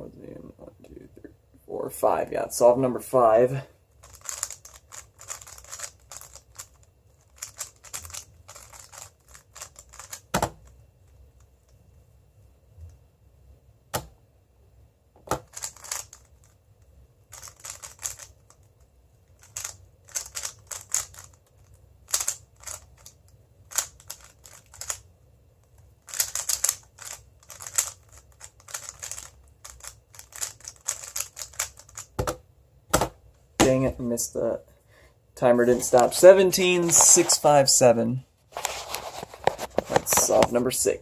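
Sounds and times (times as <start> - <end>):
plastic puzzle cube clicking: 4.0 - 10.3, 15.4 - 16.5, 17.3 - 18.6, 19.4 - 21.4, 22.1 - 25.0, 26.1 - 32.4.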